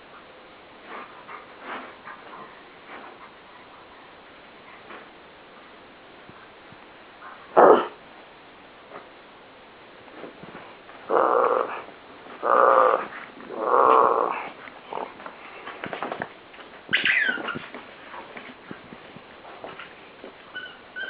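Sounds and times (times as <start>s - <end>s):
dog growling: 7.5s - 8.0s, 11.1s - 15.3s
high-pitched dog squeal: 16.9s - 17.7s, 20.5s - 21.0s.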